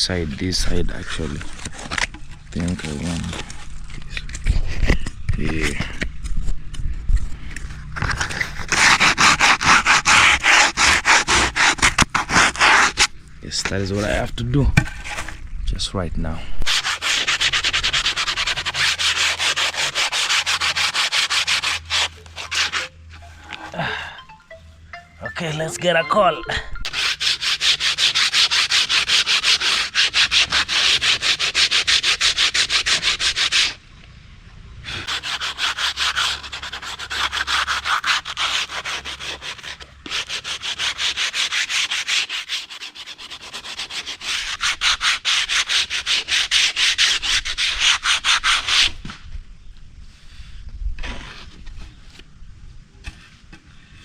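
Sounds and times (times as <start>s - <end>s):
sandpaper rubbing on wood: 8.0s - 13.1s, 16.7s - 22.9s, 26.9s - 33.8s, 34.9s - 49.0s.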